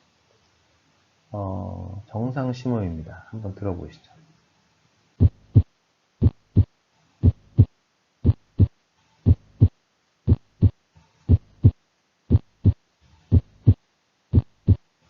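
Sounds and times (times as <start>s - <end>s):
heartbeat lub-dub: 5.2s - 14.9s.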